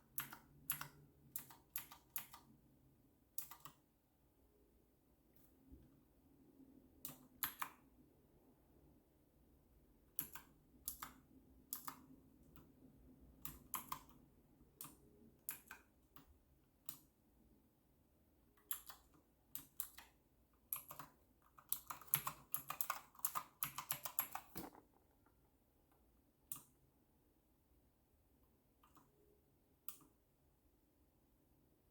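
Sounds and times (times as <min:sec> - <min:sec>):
mechanical keyboard typing: 0:00.0 - 0:02.5, 0:03.4 - 0:03.8, 0:07.0 - 0:07.8, 0:10.1 - 0:12.8, 0:13.4 - 0:17.1, 0:18.6 - 0:25.3.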